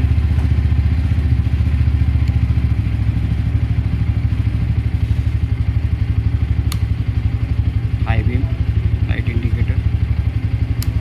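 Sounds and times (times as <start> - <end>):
motorcycle engine idling: 0.0 - 11.0
sharp click: 6.6 - 6.9.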